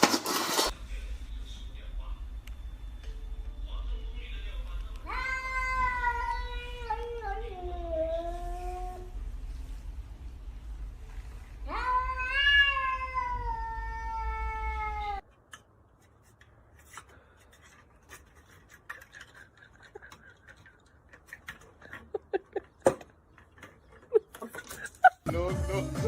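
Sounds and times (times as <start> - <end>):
cat meowing: 5.0 - 9.1, 11.7 - 15.2.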